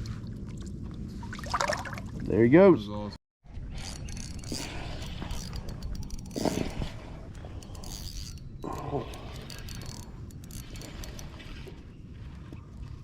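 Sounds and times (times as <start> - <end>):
fishing reel clicking: 3.8 - 11.4.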